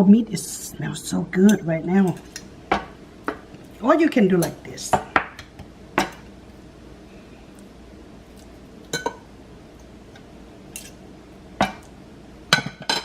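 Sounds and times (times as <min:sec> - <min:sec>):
kitchenware clinking: 0:08.9 - 0:09.2, 0:12.5 - 0:13.0.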